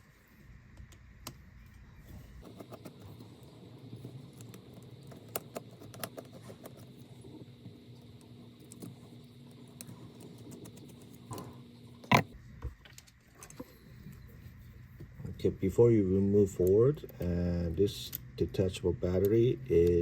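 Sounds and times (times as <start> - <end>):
faint steady hum: 0.0 - 20.0.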